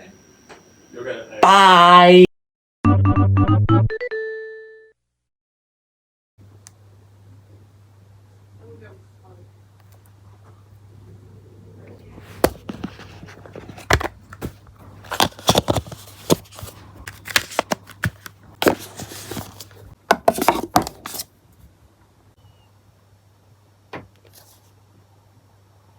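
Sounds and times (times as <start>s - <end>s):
rustling scrapes: 12.0s - 21.3s.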